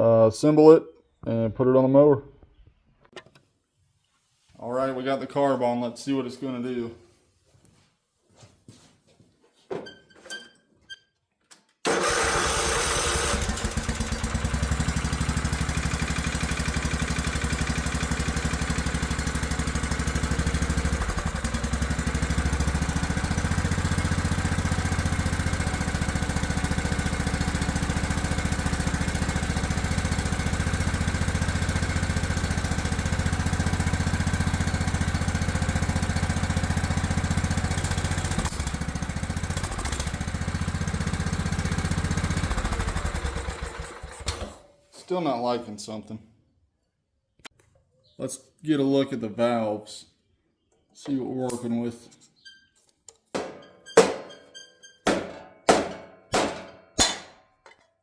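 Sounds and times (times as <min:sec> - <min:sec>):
riding mower engine running: 0:11.9 - 0:44.6.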